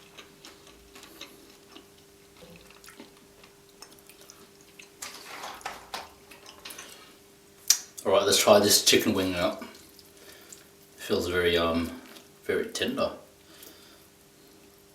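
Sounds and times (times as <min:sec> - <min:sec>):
person chewing food: 0:00.0 - 0:05.0
faint steady hum: 0:00.0 - 0:14.9.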